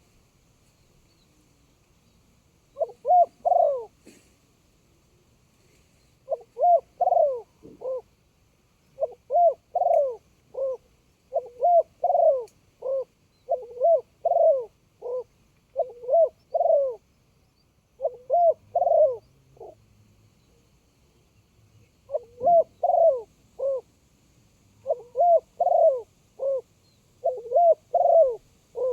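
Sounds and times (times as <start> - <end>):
dove cooing: 2.7 - 4.2, 6.2 - 8.2, 9.0 - 17.1, 18.0 - 19.8, 22.1 - 23.9, 24.8 - 28.9.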